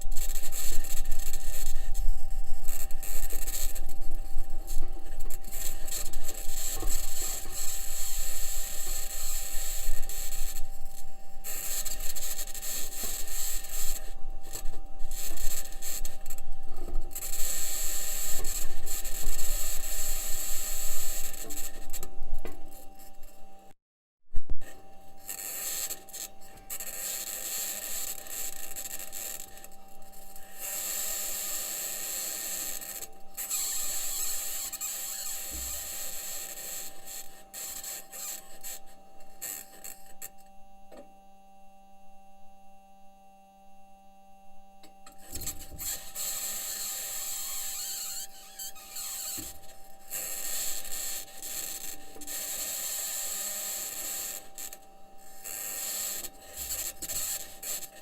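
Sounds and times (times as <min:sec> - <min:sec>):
steady hum: 0:00.0 - 0:23.8.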